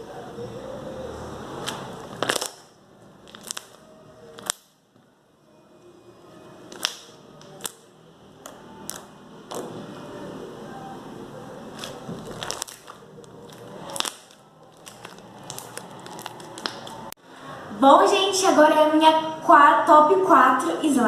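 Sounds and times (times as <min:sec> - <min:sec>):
slime squishing: 0:01.6 - 0:04.7, 0:06.7 - 0:09.8, 0:11.7 - 0:17.2.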